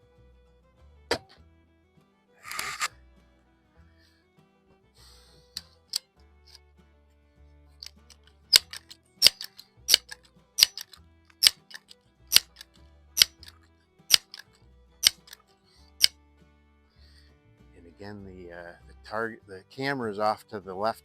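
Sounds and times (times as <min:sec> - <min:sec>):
background music: 0:00.0 - 0:21.0
air rifle pump clicks: 0:02.4 - 0:02.9, 0:07.8 - 0:15.4.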